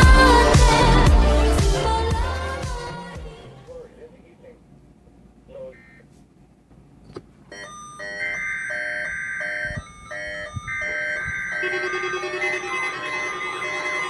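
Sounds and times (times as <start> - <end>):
electronic alarm beeps: 7.5 - 14.0
steady alarm tone: 7.5 - 14.0.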